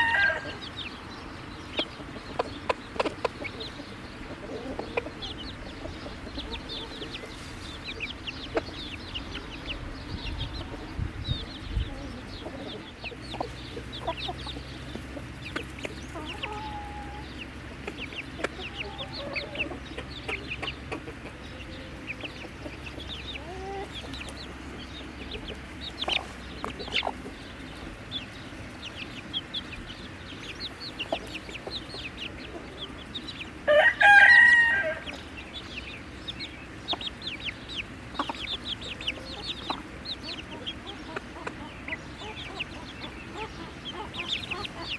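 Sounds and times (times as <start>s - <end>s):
rooster crowing: 0.0s - 0.8s, 33.7s - 35.2s
chickens clucking: 0.0s - 44.9s.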